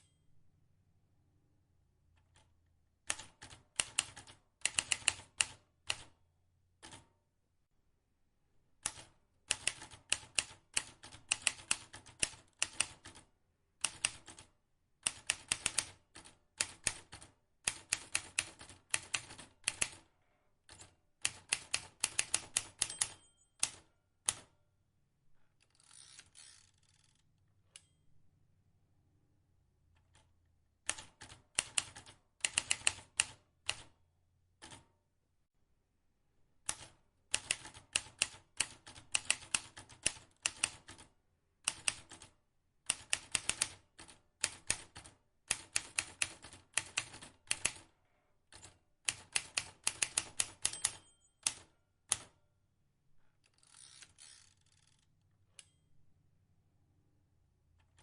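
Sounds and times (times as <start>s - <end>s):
typewriter key clicks: 49.1s - 52.3s.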